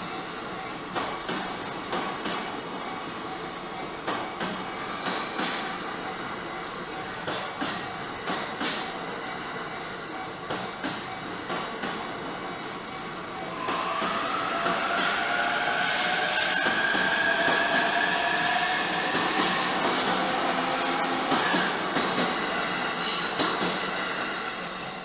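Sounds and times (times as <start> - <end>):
train wheel squeals: 13.5 - 25.0.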